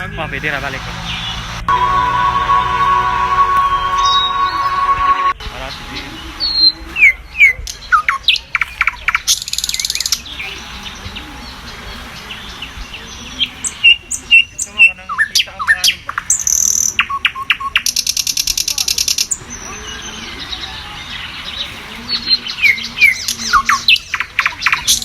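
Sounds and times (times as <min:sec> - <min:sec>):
high buzzy bird trill: 0:01.7 - 0:05.4.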